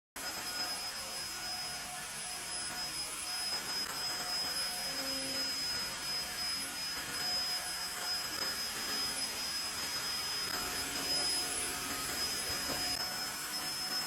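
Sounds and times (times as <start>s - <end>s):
floor vacuum running: 0.2s - 14.0s.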